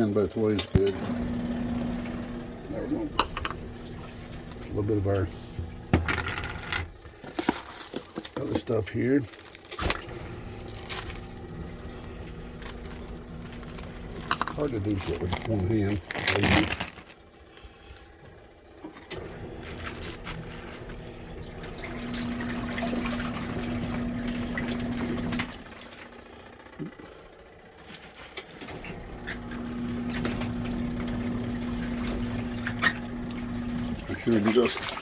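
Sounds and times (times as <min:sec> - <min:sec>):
washing machine motor humming: 0:00.0 - 0:08.6, 0:09.8 - 0:35.0
water churning in tub: 0:00.8 - 0:06.0, 0:10.1 - 0:17.4, 0:19.2 - 0:27.0, 0:28.7 - 0:35.0.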